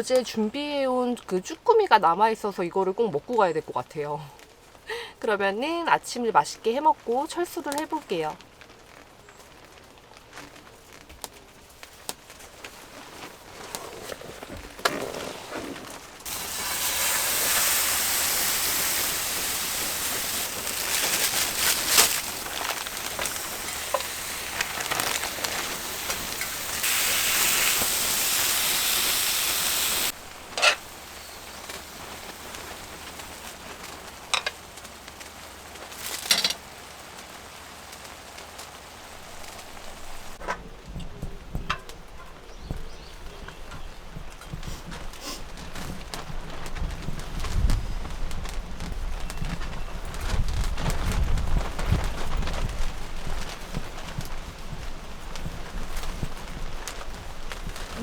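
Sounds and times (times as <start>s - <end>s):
food sizzling in a frying pan: 16.2s - 40.4s.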